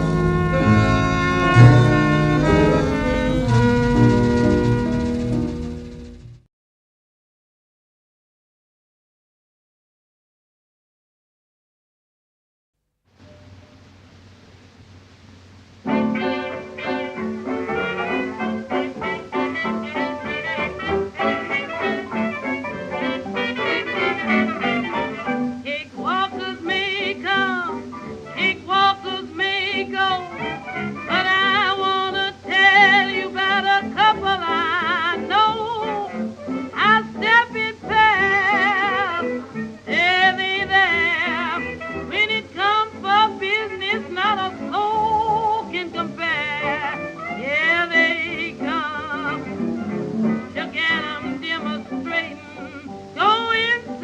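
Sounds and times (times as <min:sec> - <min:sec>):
lead melody with wide vibrato: 0:00.0 - 0:06.4, 0:15.9 - 0:25.7
old-time jazz band: 0:00.0 - 0:06.4, 0:15.5 - 0:54.0
singer with wide vibrato: 0:15.9 - 0:49.8, 0:50.6 - 0:54.0.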